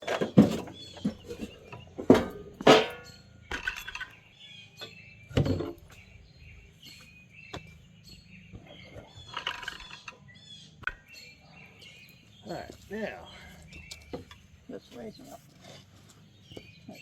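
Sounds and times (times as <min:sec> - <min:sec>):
hardware clicks and clunks: 0:00.0 - 0:04.2
small birds chirping: 0:00.0 - 0:17.0.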